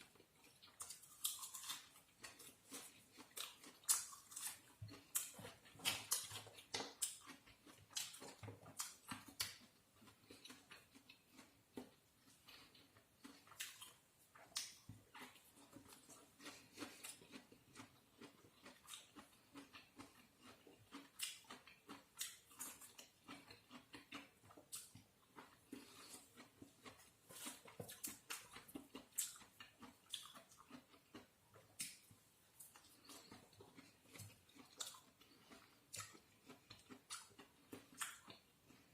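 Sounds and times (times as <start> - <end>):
crunchy bites and chewing: 0.0 - 38.9.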